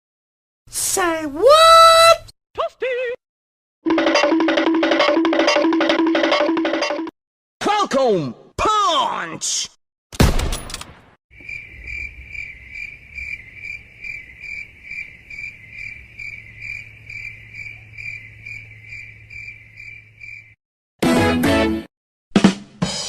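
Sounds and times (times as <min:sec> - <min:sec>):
crickets chirping: 0:11.3 - 0:20.6.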